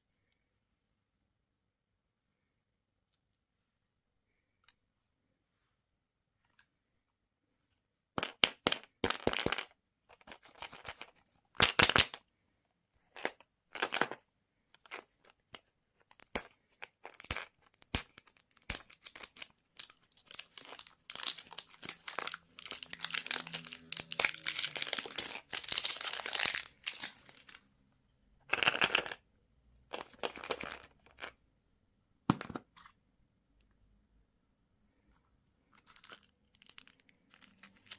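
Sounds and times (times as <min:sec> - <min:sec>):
candy wrappers crinkling: 0:16.1 - 0:27.6, 0:28.5 - 0:29.2, 0:29.9 - 0:31.4, 0:35.6 - 0:37.9.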